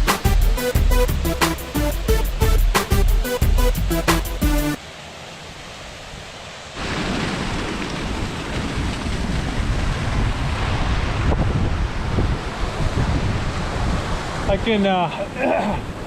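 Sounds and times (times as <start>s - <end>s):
music: 0.0s - 4.8s
waterfall: 0.0s - 16.0s
wind buffeting microphone: 6.8s - 14.8s.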